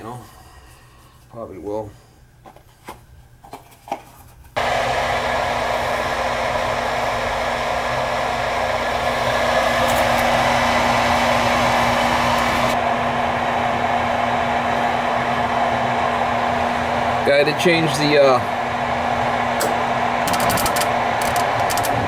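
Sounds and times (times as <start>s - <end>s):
furnace motor running: 4.6s - 22.0s.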